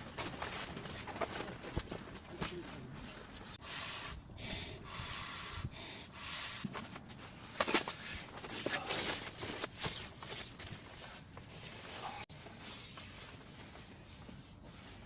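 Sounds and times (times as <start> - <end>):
camping gear rustling: 0.0 - 15.0.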